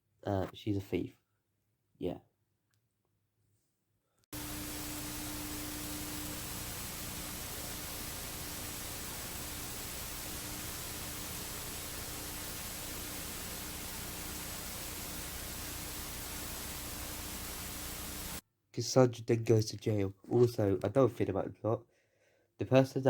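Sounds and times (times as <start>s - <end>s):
steady background hiss: 4.4s - 18.4s.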